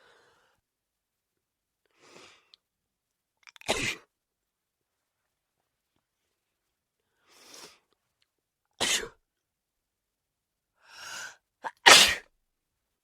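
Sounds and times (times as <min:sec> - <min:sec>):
woman sneezing: 0:11.6 - 0:12.2.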